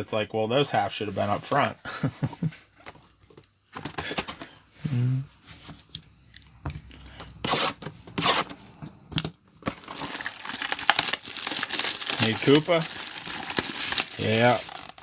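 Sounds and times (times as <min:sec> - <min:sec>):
cards shuffling and scraping: 0:06.7 - 0:08.6
wrappers tearing and crinkling: 0:09.6 - 0:15.0.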